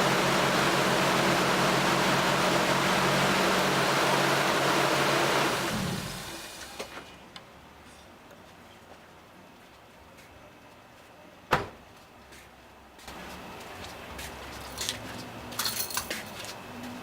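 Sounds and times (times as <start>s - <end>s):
car engine running: 0.0s - 6.8s.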